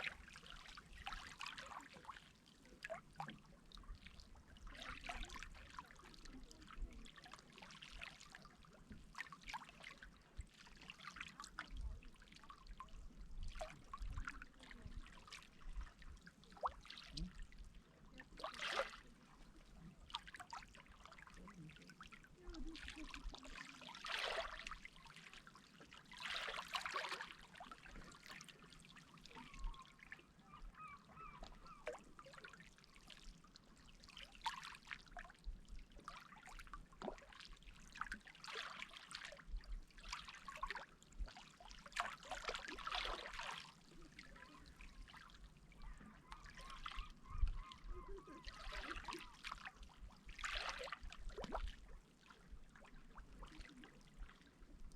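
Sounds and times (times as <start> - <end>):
sea water splashing: 18.1 - 33.4, 40.2 - 54.7.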